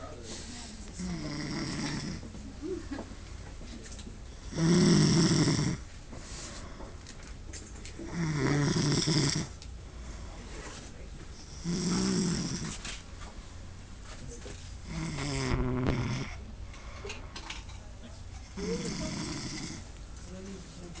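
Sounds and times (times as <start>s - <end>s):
man snoring: 1.0s - 2.2s, 4.5s - 5.8s, 8.1s - 9.6s, 11.5s - 12.7s, 14.8s - 16.4s, 18.6s - 19.9s.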